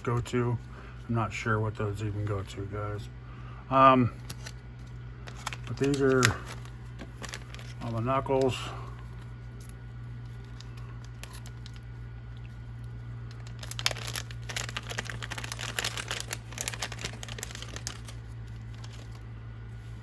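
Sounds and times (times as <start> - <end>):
steady low hum: 0.0 - 20.0
plastic bags crinkling: 4.1 - 19.3.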